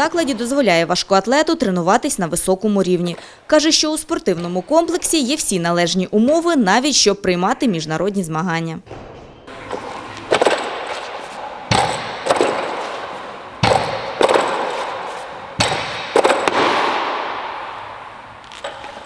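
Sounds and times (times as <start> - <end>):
barbells crashing onto platform: 9.0 - 19.0.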